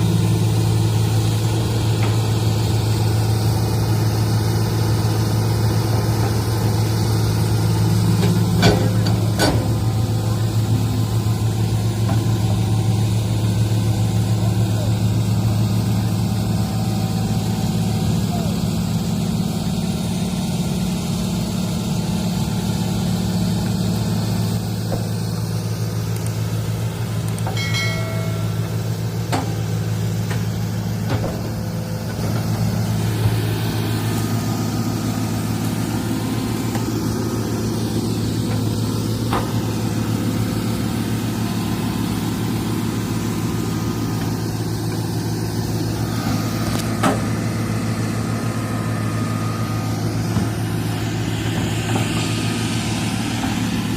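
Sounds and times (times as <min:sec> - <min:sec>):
excavator diesel engine running: 0:00.0 - 0:53.9.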